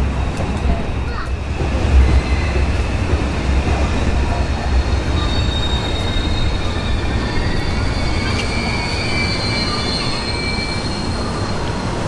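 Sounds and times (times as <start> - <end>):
train rumbling on rails: 0.0 - 12.0
high-pitched wheel squeal: 4.8 - 11.8.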